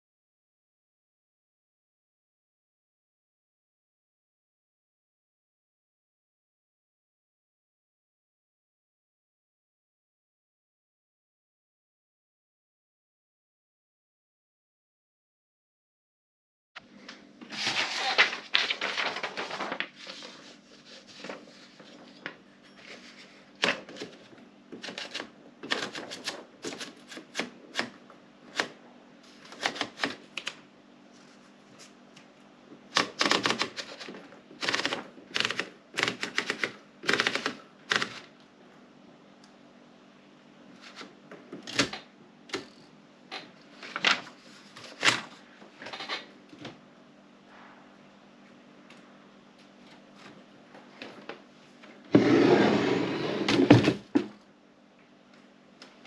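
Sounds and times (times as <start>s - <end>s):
manual typewriter typing: 24.8s - 27.9s, 29.5s - 30.5s, 32.9s - 38.2s.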